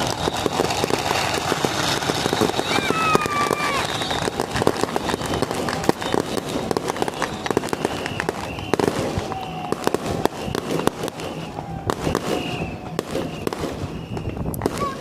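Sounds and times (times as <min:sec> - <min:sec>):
firecrackers cracking: 0:00.0 - 0:15.0.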